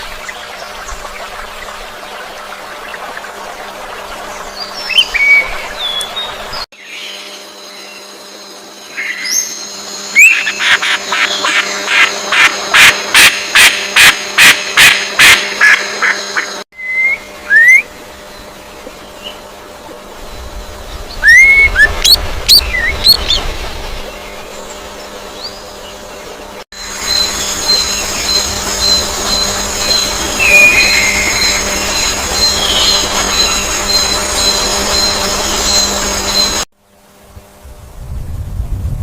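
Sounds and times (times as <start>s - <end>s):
harsh repeated bird notes: 9.0s - 19.5s, 20.7s - 36.7s
bird chirps and whistles: 10.2s - 10.8s, 16.8s - 17.9s, 21.2s - 23.4s, 27.1s - 36.6s
steady high ringing: 26.8s - 36.6s.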